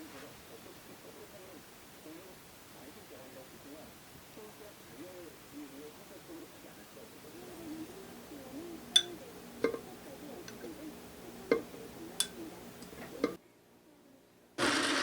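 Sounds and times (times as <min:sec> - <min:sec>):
faint background music: 0:00.0 - 0:14.6
kitchenware clinking: 0:08.8 - 0:13.4.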